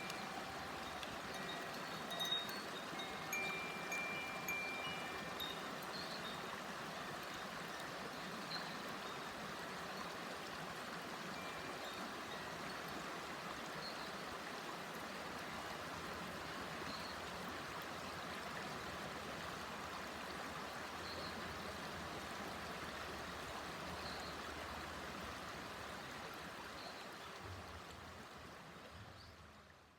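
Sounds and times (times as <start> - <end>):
stream babbling: 0.0 - 29.9.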